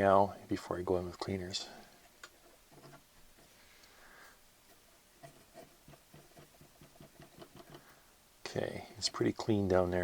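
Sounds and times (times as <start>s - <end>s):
cotton swab scratching: 4.6s - 8.0s.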